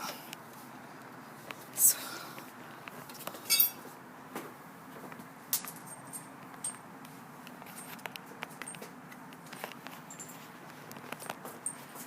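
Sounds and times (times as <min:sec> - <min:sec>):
hand tools clinking: 0:03.5 - 0:03.8.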